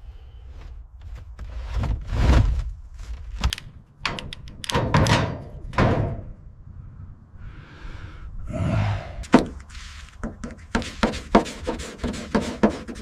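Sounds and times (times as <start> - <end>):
knocks and thunks: 4.7 - 6.3
short scraping noises: 9.2 - 13.0.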